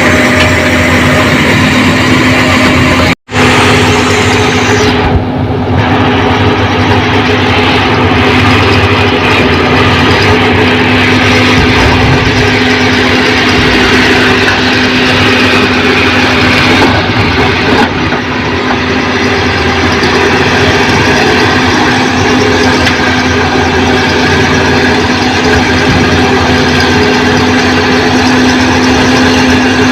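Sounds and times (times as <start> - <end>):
heavy diesel engine running: 0.0 - 29.9.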